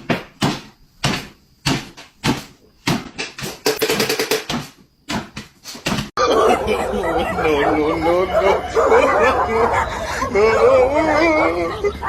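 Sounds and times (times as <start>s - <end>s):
knocks and bangs: 0.0s - 6.1s.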